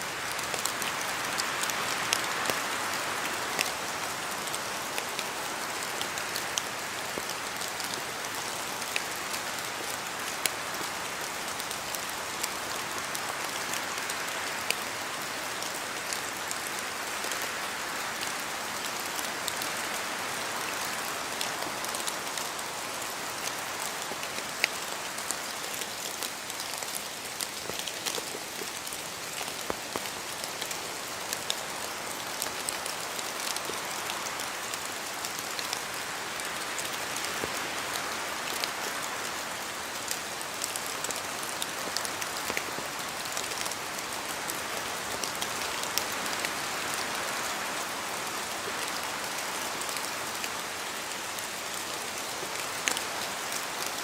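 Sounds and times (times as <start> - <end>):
rain falling on trees: 0.0 - 54.0
water drops falling from leaves: 23.2 - 37.9.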